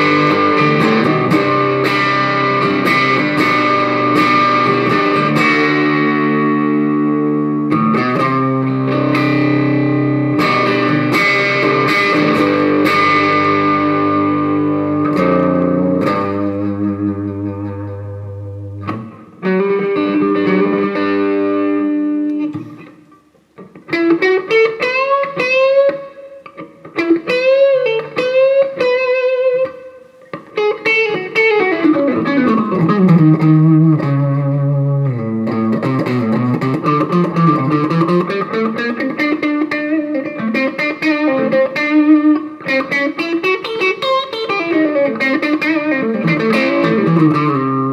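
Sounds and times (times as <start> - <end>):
electric guitar lead phrases: 0.0 - 47.9
overdriven electric guitar chords: 0.0 - 47.9.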